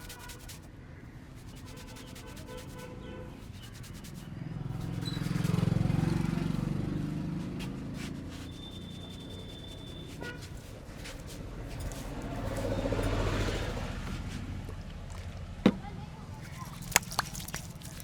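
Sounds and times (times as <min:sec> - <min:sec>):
motor vehicle passing: 0:04.3 - 0:18.0
hands rubbing head massage: 0:07.3 - 0:12.8, 0:16.4 - 0:18.0.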